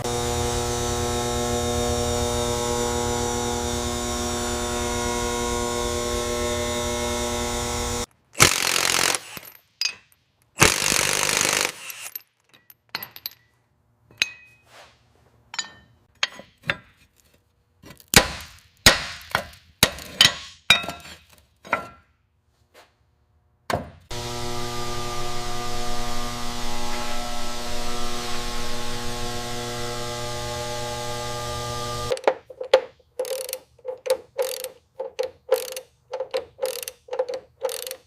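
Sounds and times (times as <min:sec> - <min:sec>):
metallic clicks and clinks: 0:32.1 - 0:38.0.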